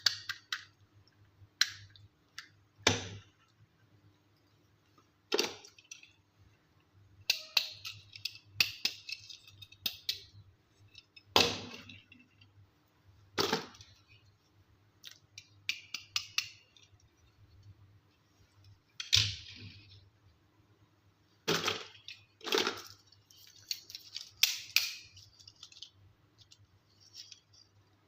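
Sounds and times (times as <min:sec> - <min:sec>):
plastic toys clicking and tapping: 0:00.0 - 0:00.8, 0:07.2 - 0:12.4, 0:15.0 - 0:17.1, 0:21.5 - 0:27.6.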